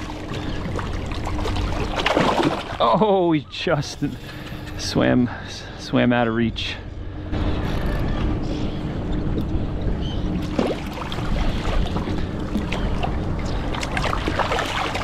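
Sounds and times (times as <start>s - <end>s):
light knocks and splashes: 0.0s - 2.9s
water sounds: 0.0s - 6.0s, 6.8s - 15.0s
faint steady hum: 0.0s - 15.0s.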